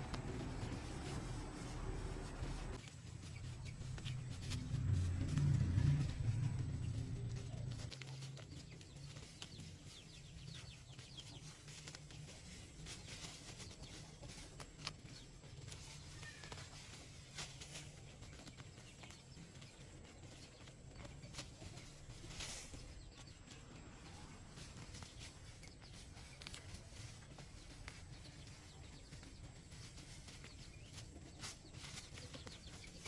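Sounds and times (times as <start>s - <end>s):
low rumble: 0.0s - 9.0s
faint bird calls: 15.7s - 33.0s.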